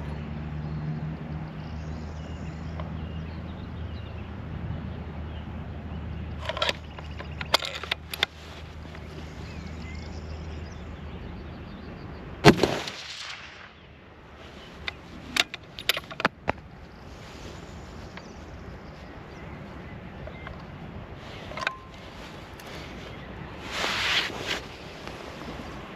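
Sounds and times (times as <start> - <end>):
light sharp clicks and knocks: 6.4 - 9.2
rifle shot: 12.4 - 13.8.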